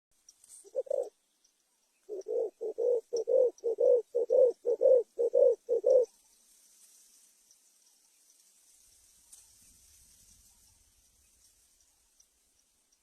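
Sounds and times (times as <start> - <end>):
dove cooing: 0.6 - 1.2, 2.0 - 6.1.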